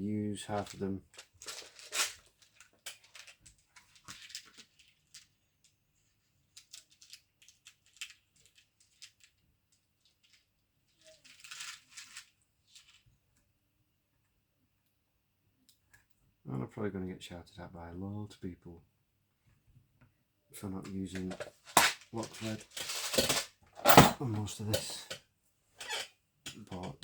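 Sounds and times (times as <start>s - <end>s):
metal screws and tools rattling: 21.3s - 25.1s.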